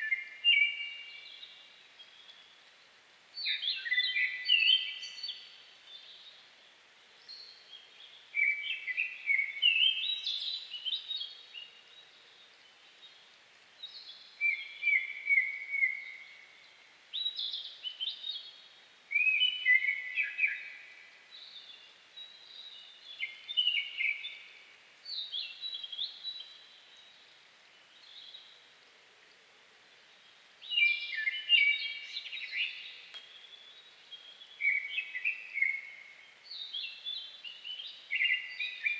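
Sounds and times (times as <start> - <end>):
songbird singing whistled phrases: 0.0 - 1.5, 3.4 - 6.2, 8.4 - 11.7, 13.8 - 16.4, 19.1 - 27.1, 30.6 - 38.9
faint forest background hiss: 0.0 - 38.9.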